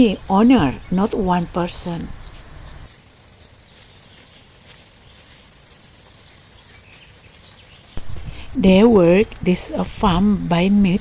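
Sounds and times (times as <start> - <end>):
high pulsing insect trill: 0.0 - 6.9
faint outdoor ambience: 0.0 - 11.0.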